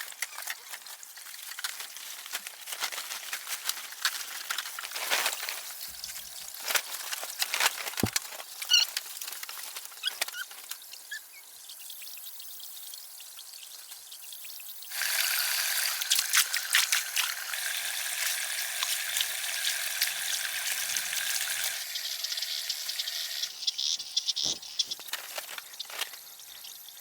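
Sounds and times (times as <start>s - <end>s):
water pouring and splashing: 3.8s - 10.0s, 14.9s - 23.4s
water dripping: 15.8s - 23.5s.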